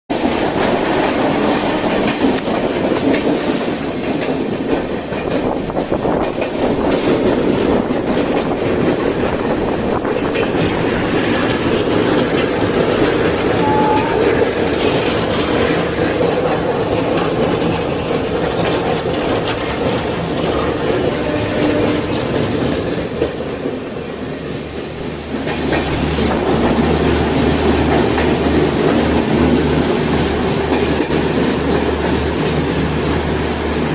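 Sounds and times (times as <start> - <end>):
train rumbling: 0.1 - 33.9
train wheels clattering on rails: 0.1 - 33.9.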